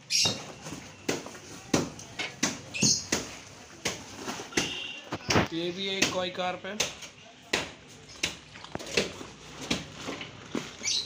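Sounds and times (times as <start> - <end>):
plastic bags crinkling: 8.4 - 11.0.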